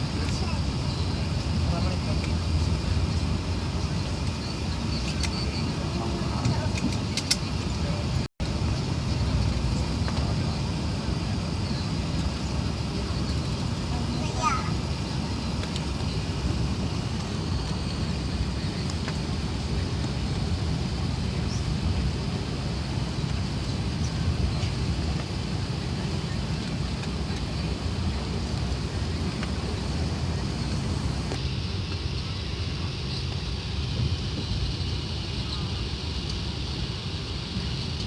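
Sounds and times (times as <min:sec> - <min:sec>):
airplane cabin engine rumble: 0:00.0 - 0:38.0.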